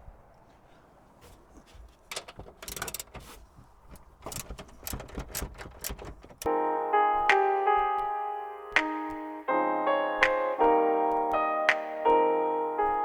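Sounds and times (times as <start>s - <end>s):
socket ratchet clicking: 2.1s - 3.4s, 4.0s - 6.5s
piano music: 6.4s - 13.0s.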